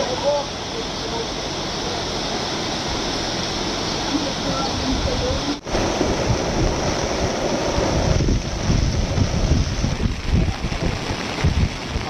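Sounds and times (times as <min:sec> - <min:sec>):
rushing floodwater roar: 0:00.0 - 0:12.0
wind buffeting microphone: 0:02.7 - 0:12.0.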